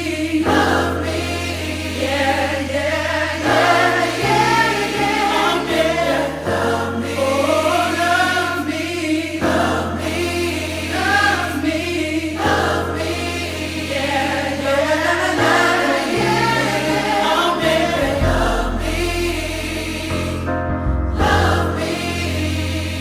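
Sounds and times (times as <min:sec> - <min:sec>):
choir-like backing vocals: 0:00.0 - 0:23.0
r and b song: 0:00.0 - 0:23.0
slow bass line: 0:15.4 - 0:23.0.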